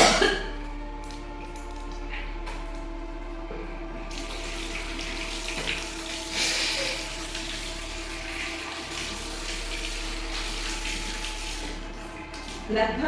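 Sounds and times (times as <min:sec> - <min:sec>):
water splashing out: 0:00.0 - 0:02.9.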